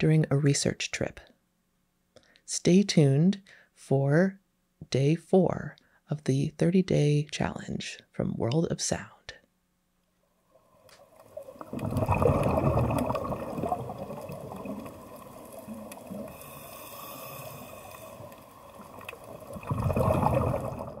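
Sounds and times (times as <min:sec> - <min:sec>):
moving water: 0:10.5 - 0:21.0.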